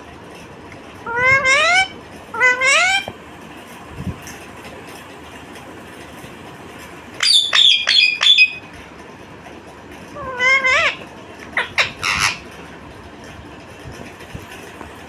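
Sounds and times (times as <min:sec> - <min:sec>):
parakeet shrill squawks: 0:01.1 - 0:03.1, 0:07.2 - 0:08.6, 0:10.2 - 0:11.0, 0:11.6 - 0:12.4
parakeet wavering call: 0:01.1 - 0:03.1, 0:07.2 - 0:08.6, 0:10.2 - 0:11.0, 0:11.6 - 0:12.4.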